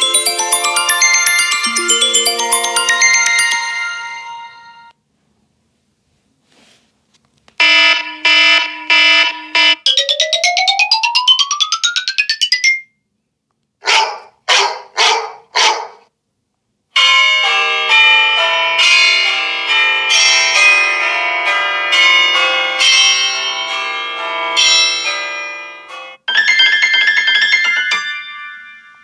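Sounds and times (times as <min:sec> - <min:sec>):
chiming melodic ringtone: 0:00.0 - 0:04.9, 0:09.8 - 0:12.9, 0:26.4 - 0:29.0.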